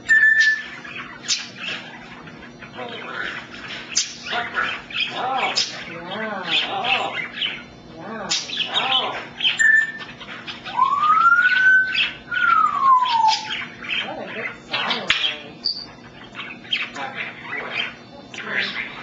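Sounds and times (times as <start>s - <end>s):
parrot whistling: 0.0s - 1.6s, 9.5s - 13.9s.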